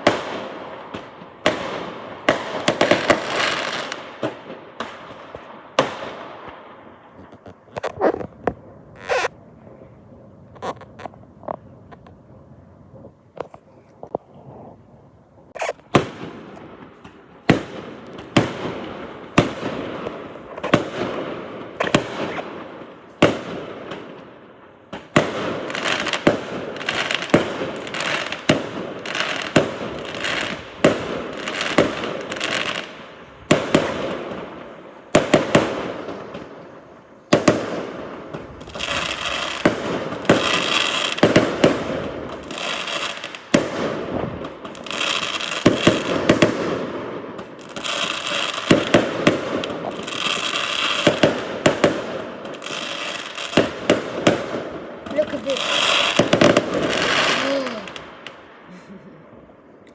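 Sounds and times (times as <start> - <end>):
fireworks bangs: 0.0 - 14.8, 15.5 - 59.8
fireworks crackling: 0.0 - 59.9.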